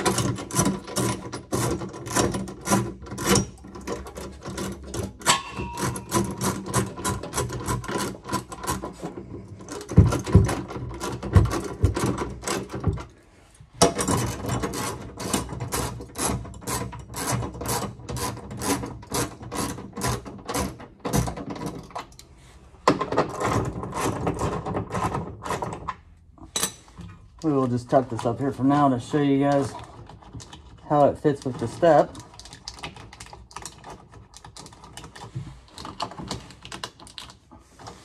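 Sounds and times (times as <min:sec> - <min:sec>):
hand ratchet clicking: 0:00.0 - 0:09.1.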